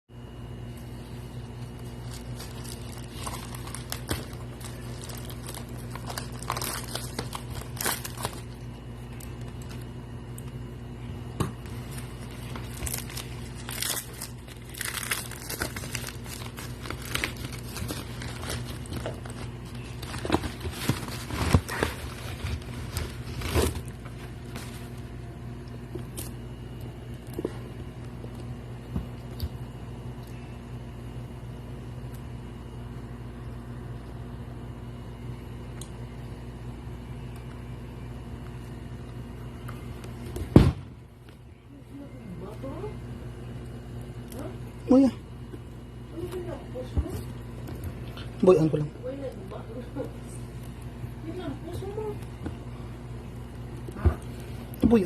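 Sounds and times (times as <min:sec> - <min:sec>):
steady low hum: 0:00.1 - 0:55.0
plastic and paper crinkling: 0:00.7 - 0:09.9, 0:11.6 - 0:25.2
packaging tearing: 0:01.6 - 0:09.9, 0:11.7 - 0:25.1.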